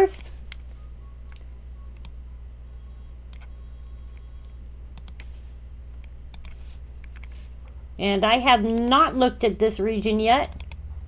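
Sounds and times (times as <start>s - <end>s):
steady low hum: 0.0s - 11.0s
computer mouse clicks: 5.0s - 5.3s, 6.0s - 7.4s, 10.2s - 10.8s.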